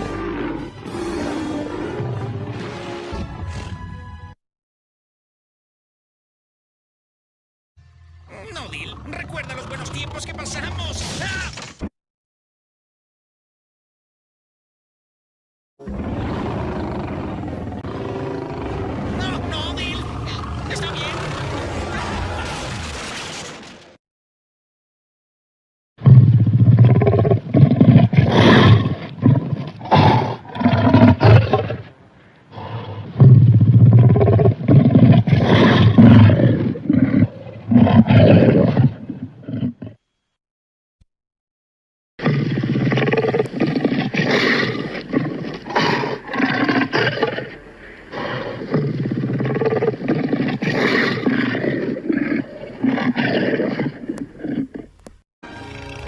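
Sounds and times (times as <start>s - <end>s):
cartoon alligator roaring: 0.0s - 3.0s, 8.2s - 11.0s, 15.8s - 22.9s, 32.5s - 40.0s, 42.2s - 55.0s.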